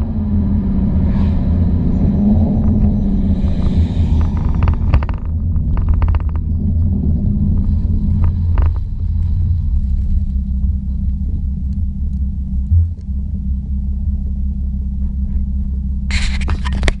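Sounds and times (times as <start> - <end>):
car engine exhaust rumble: 0.0 - 17.0.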